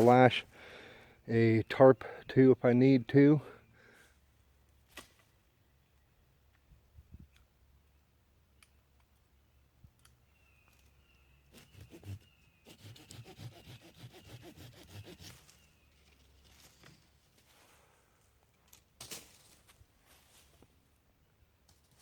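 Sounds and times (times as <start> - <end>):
saw cutting wood: 11.5 - 15.5.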